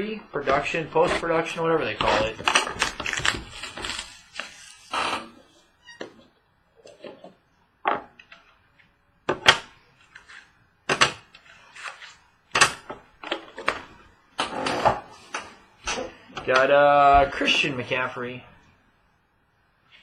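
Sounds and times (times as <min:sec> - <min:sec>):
cardboard and plastic ripping: 0:00.4 - 0:04.9.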